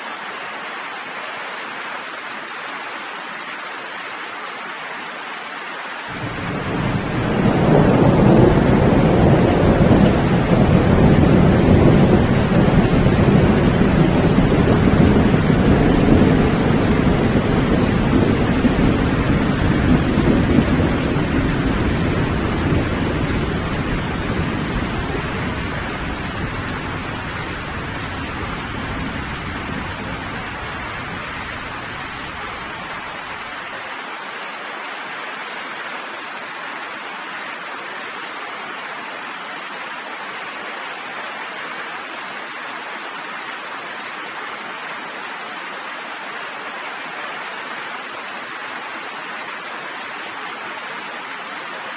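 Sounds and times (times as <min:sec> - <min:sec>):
steady rain falling: 0:00.0 - 0:51.9
rolling thunder rumble: 0:06.2 - 0:32.6.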